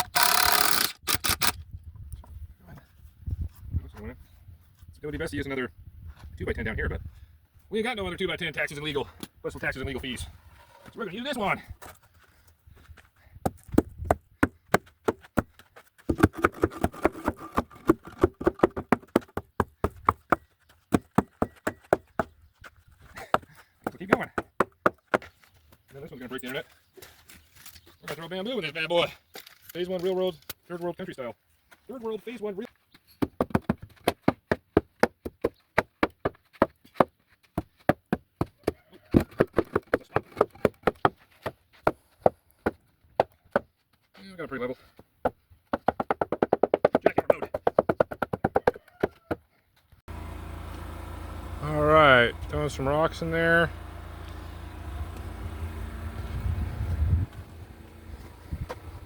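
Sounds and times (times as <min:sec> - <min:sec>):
hammer knocking on wooden board: 0:16.1 - 0:22.3, 0:37.9 - 0:42.0, 0:45.2 - 0:49.4.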